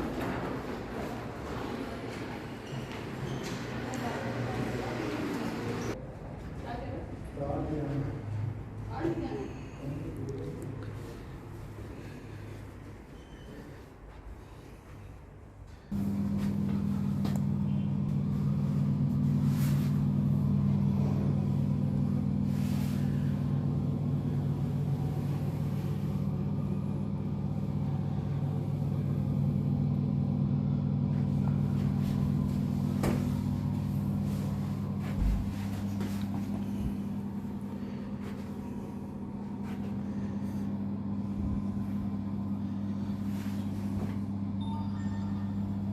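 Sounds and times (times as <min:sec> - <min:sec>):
vehicle engine humming: 0:00.0 - 0:06.0, 0:15.9 - 0:45.9.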